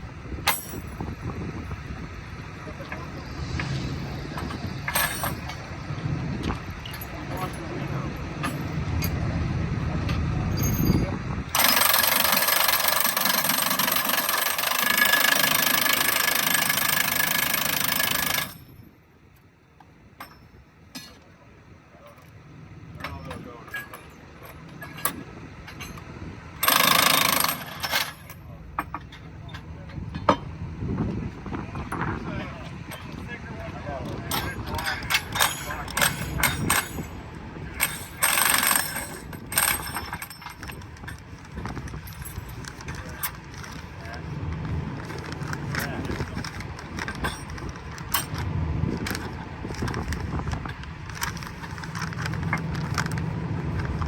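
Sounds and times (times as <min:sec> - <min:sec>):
metal-on-metal clanks: 0:04.4 - 0:05.8, 0:23.0 - 0:30.5, 0:31.8 - 0:43.8
power tool running: 0:11.6 - 0:18.6, 0:26.6 - 0:28.1, 0:37.8 - 0:40.0.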